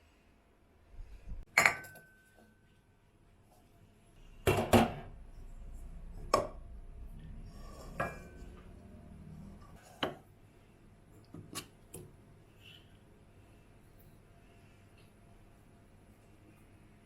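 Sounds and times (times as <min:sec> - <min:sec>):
dishes and glassware clinking: 0:01.5 - 0:02.6, 0:07.8 - 0:08.6.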